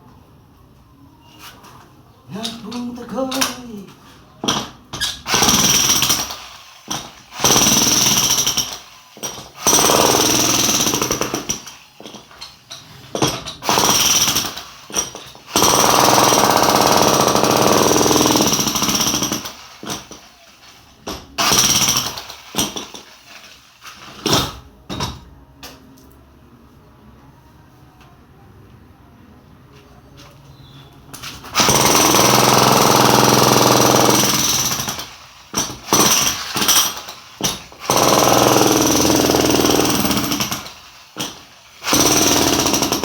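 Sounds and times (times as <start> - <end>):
jackhammer chipping concrete: 5.3 - 12.2, 13.2 - 20.1, 31.6 - 43.0.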